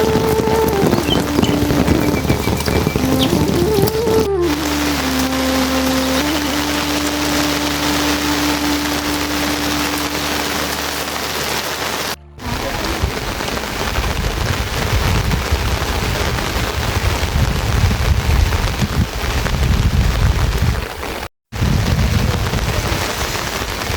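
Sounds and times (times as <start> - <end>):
low rumbling: 0.0 - 18.8
heavy rain: 0.0 - 23.9.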